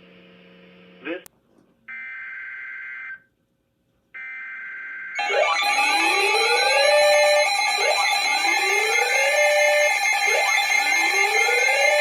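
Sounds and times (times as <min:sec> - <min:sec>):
alert tones with rising sweep: 0:05.2 - 0:12.0.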